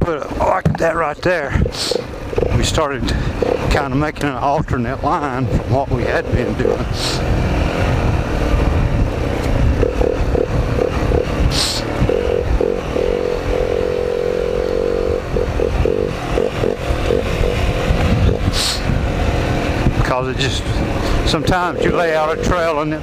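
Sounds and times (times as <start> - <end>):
dirt bike engine revving: 0.5 - 23.0.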